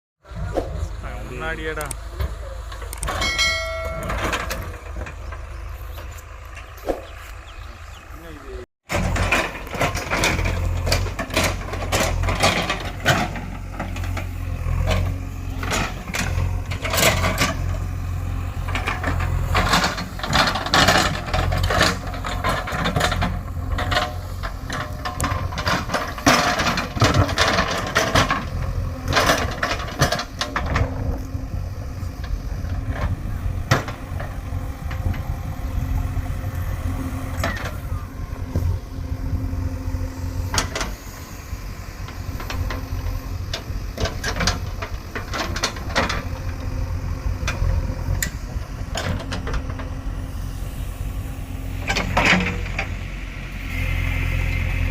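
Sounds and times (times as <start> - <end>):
diesel engine running: 0.2 - 54.9
machine knocking and rattling: 8.9 - 31.1.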